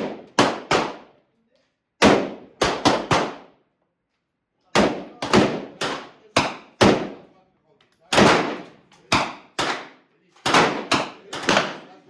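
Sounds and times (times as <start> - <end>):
gunshots with echo: 0.0 - 1.1, 2.0 - 3.5, 4.8 - 7.3, 8.1 - 12.0.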